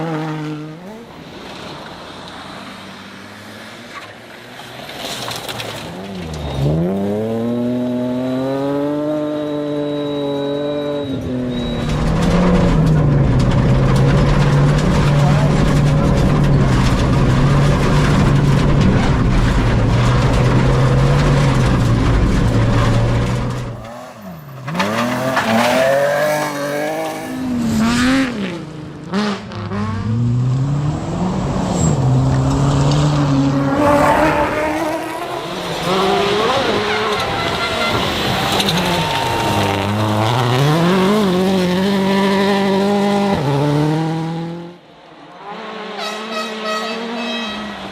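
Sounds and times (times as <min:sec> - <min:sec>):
rally car engine revving: 0:00.0 - 0:01.2, 0:05.6 - 0:47.9
tyre squeal: 0:09.5 - 0:12.6, 0:33.8 - 0:41.2.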